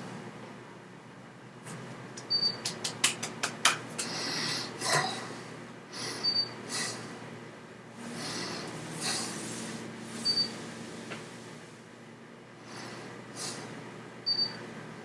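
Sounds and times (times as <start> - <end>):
person breathing: 4.0 - 7.2, 8.0 - 9.8.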